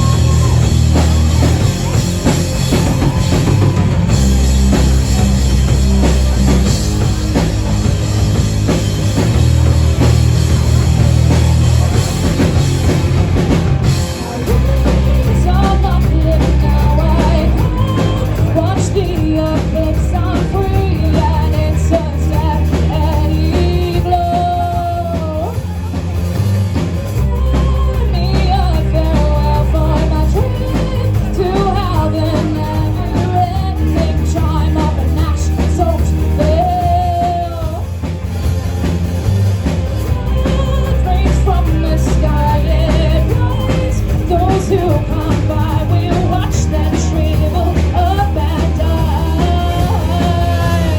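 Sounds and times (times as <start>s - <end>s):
lead vocal singing: 0.0s - 4.4s, 11.4s - 26.0s, 27.2s - 38.0s, 40.1s - 50.9s
live rock band playing: 0.0s - 50.9s.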